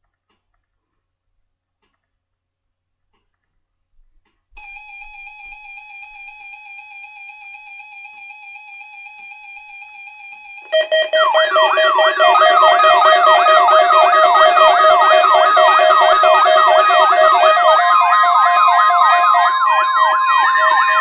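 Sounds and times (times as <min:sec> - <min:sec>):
pulsing multi-pitch alert tone: 0:10.7 - 0:21.0
siren-like sweeping tone: 0:10.7 - 0:21.0.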